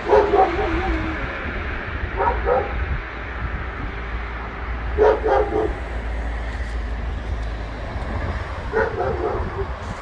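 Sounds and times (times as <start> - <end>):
dog barking: 0.0 - 1.0, 2.2 - 2.8, 5.0 - 5.8, 8.7 - 9.7
steady low rumble: 0.0 - 10.0.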